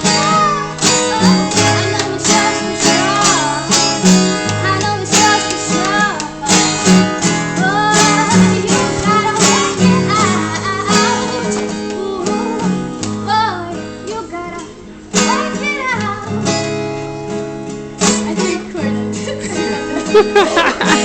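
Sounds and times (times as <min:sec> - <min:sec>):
person singing: 0:00.0 - 0:16.3
strummed acoustic guitar: 0:00.0 - 0:21.0.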